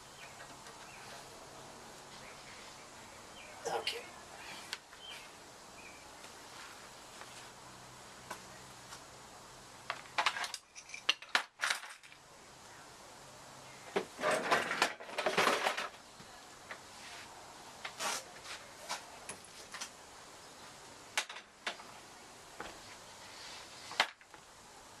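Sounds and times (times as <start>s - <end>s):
metal clinking and clattering: 10.2s - 12.2s.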